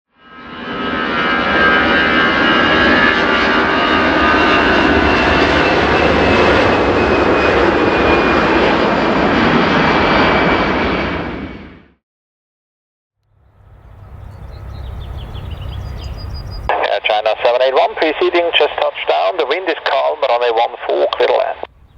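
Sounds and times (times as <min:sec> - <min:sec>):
jet roar: 0:00.3 - 0:11.9, 0:13.3 - 0:21.9
high fan whine: 0:13.3 - 0:16.8.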